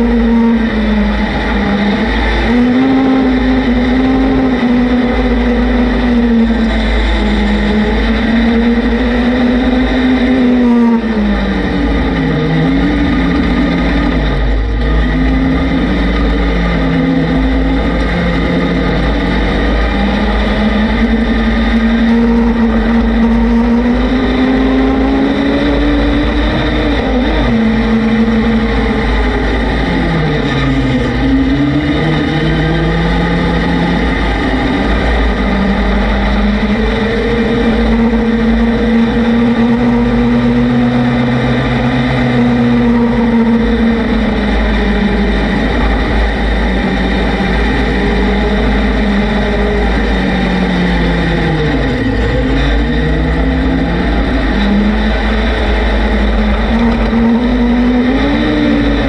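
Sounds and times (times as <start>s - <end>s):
vehicle engine running: 0.0s - 59.0s
wind rumble on microphone: 0.0s - 59.0s.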